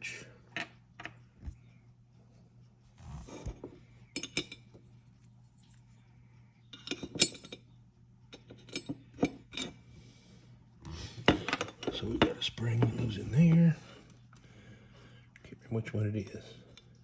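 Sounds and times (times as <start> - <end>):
small metal parts clinking: 6.7 - 7.7.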